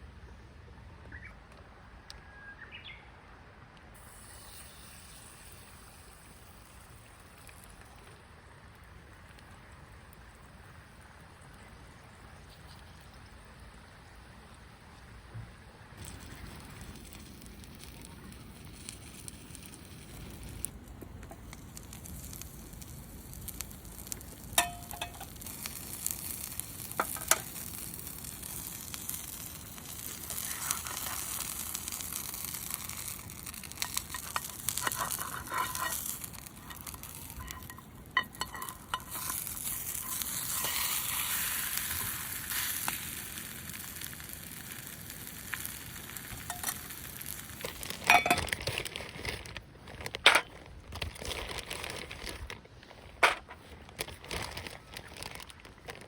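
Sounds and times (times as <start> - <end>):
food sizzling in a pan: 4.0 - 8.3, 16.0 - 20.7, 21.3 - 48.4.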